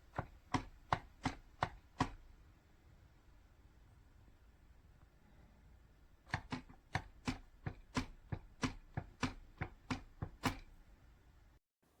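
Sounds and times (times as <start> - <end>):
keyboard typing clacks: 6.3 - 10.7.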